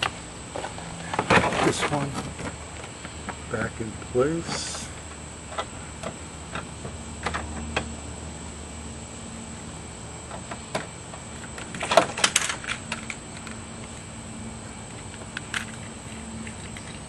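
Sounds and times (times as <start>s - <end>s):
rattling clicks: 14.9s - 17.0s.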